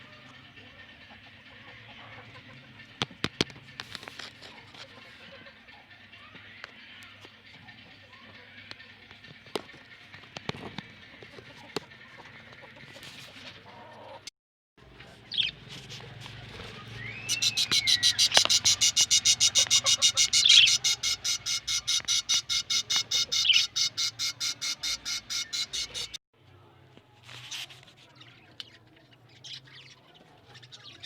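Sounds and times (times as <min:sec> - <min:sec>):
budgerigars whistling and chirping: 0:16.6 - 0:26.2.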